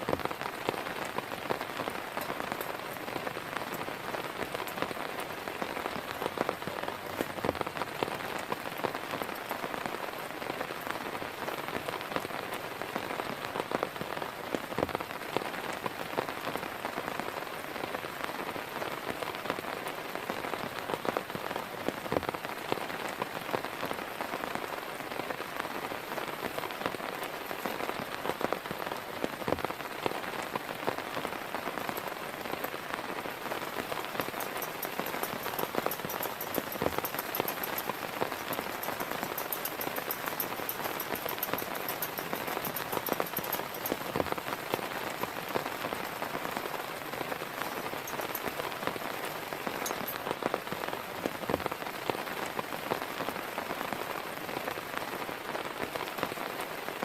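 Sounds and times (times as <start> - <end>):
raindrops tapping: 0.0 - 17.3, 19.2 - 52.6
rain hissing: 0.0 - 52.4.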